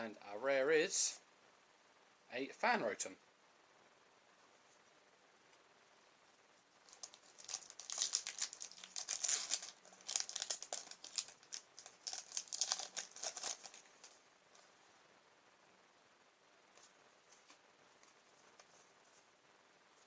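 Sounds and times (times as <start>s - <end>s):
foil wrapper crinkling: 6.8s - 14.2s.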